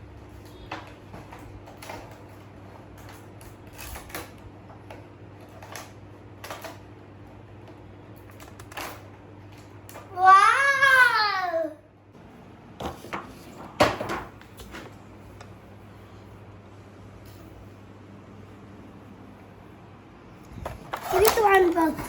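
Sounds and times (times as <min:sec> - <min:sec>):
child squealing: 0:10.2 - 0:11.8
steady low hum: 0:11.4 - 0:22.0
toy packaging clicks and rustles: 0:20.6 - 0:22.0.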